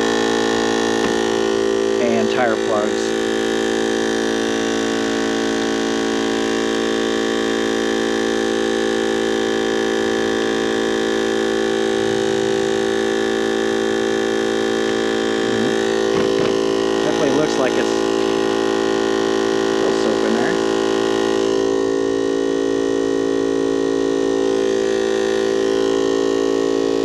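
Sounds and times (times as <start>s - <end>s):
steady electrical hum: 0.0s - 27.0s.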